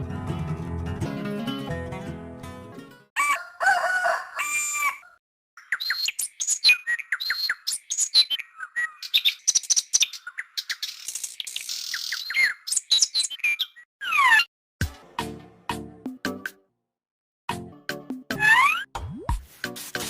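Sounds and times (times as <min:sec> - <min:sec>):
guitar music: 0:00.0 - 0:03.0
rooster crowing: 0:03.2 - 0:05.2
small birds chirping: 0:05.6 - 0:14.5.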